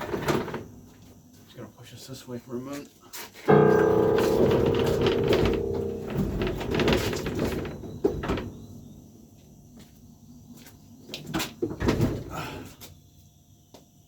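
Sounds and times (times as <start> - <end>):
wooden knocks and bumps: 3.5 - 8.8
piano rumbling across floor: 3.5 - 9.1.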